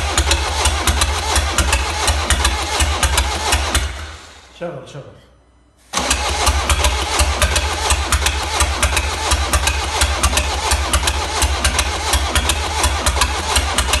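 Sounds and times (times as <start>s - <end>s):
diesel engine running: 0.0s - 4.5s, 5.8s - 14.0s
sharp engine ticking: 6.0s - 14.0s.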